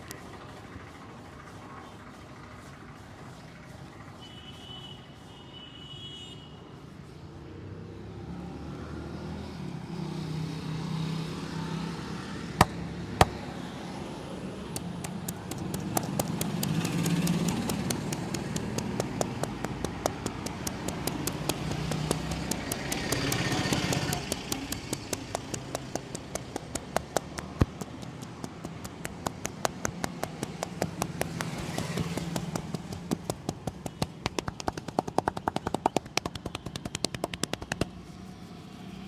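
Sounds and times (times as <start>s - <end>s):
street traffic hum: 0.0s - 39.0s
rapid hand tapping massage: 14.7s - 38.1s.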